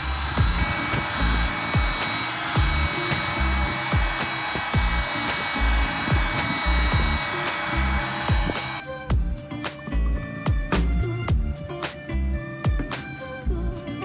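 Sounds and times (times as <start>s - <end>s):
electric power tool whining: 0.0s - 8.9s
music with deep drum beat: 0.0s - 13.8s.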